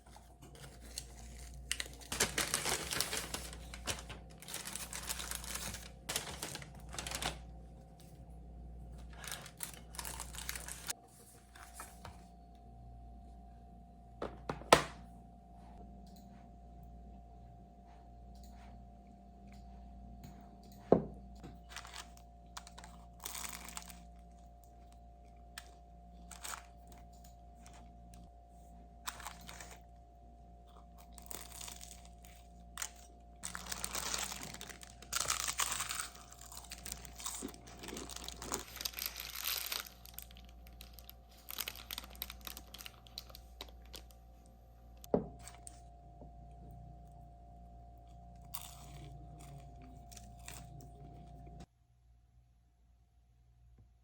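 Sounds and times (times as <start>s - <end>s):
rustling and crinkling: 0.0s - 8.2s, 8.9s - 12.4s, 29.1s - 29.9s, 31.0s - 44.3s
faint steady hum: 0.0s - 54.0s.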